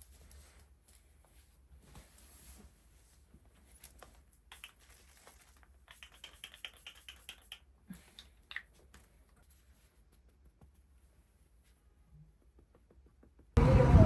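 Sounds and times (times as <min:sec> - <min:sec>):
small clicks and taps: 0:03.8 - 0:09.1.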